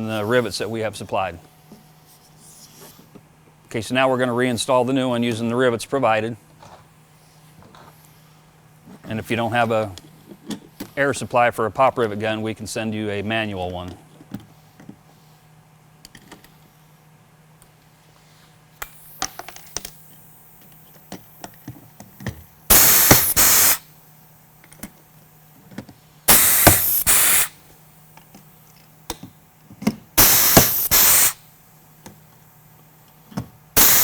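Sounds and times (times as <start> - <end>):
rivet gun air hiss: 18.8 - 19.5, 22.7 - 23.9, 26.3 - 27.7, 30.2 - 31.5, 33.8 - 34.0.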